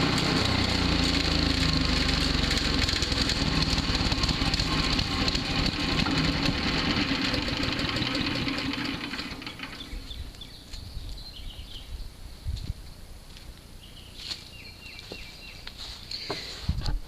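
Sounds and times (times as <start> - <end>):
wood chipper engine running: 0.0 - 10.5.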